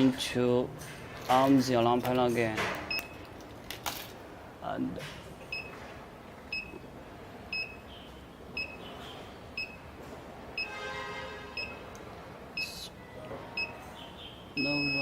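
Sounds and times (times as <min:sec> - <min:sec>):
alarm panel short high beeps: 0:14.6 - 0:15.0.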